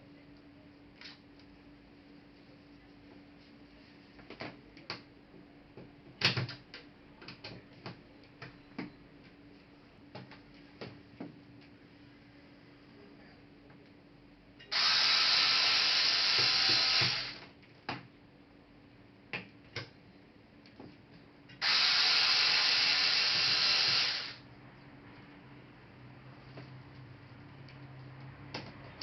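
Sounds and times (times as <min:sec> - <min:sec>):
electric screwdriver running: 0:14.7 - 0:17.4, 0:21.6 - 0:24.4.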